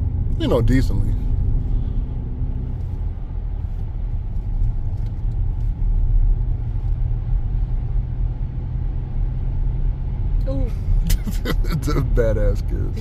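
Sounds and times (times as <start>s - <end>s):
car engine and tyre noise: 0.0s - 13.0s.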